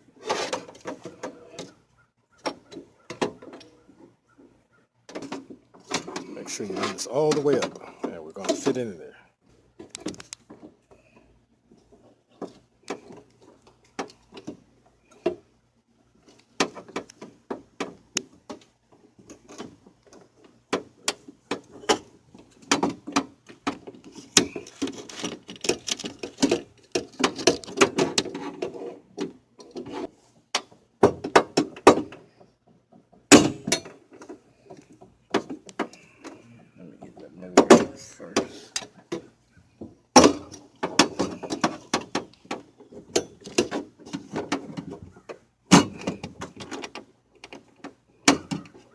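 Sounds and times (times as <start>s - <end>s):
metal and plastic clicks and rattles: 16.2s - 36.7s, 40.2s - 48.9s.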